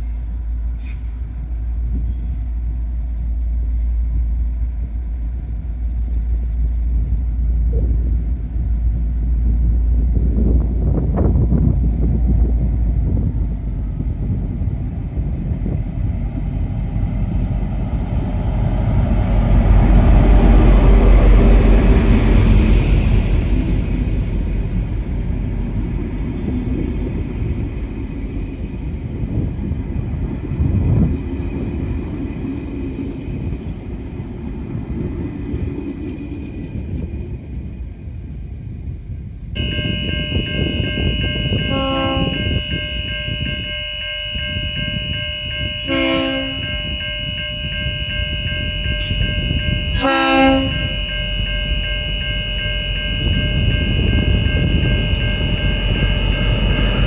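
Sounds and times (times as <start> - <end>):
steady high tones: 39.6 - 50.0
locomotive horn blasts: 39.6 - 57.0.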